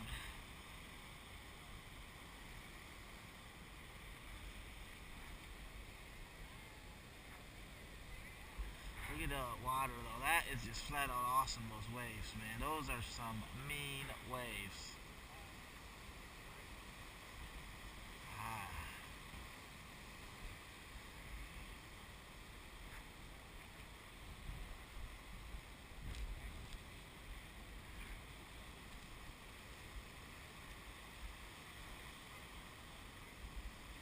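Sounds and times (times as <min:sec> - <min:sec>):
distant heavy surf: 0:07.2 - 0:24.0.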